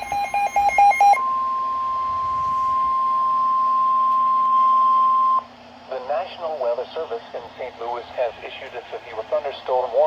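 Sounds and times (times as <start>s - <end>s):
rapid electronic alert beeps: 0.0s - 1.2s
steady warning alarm tone: 0.0s - 5.5s.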